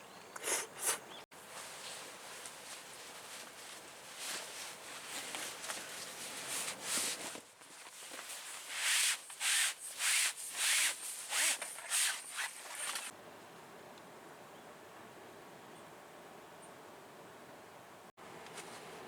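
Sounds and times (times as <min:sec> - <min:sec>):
rubbing strokes: 0:08.3 - 0:13.1.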